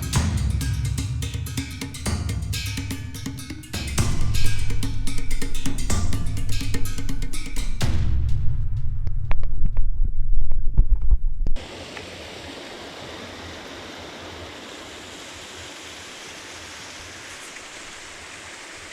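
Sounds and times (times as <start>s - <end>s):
drum-heavy music: 0.0s - 9.1s
mountain stream rushing: 11.6s - 18.9s.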